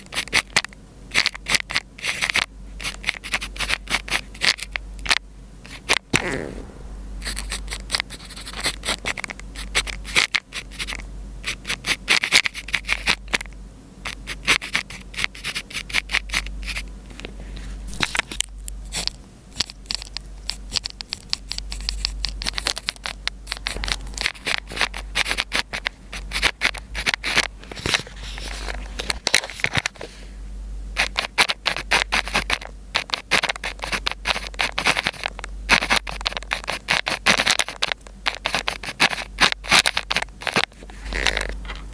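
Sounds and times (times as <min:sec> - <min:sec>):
pen scratching on paper: 0:00.0 - 0:04.7, 0:07.2 - 0:13.3, 0:14.1 - 0:16.8, 0:18.9 - 0:28.7, 0:31.0 - 0:41.2
low steady hum: 0:00.0 - 0:41.9.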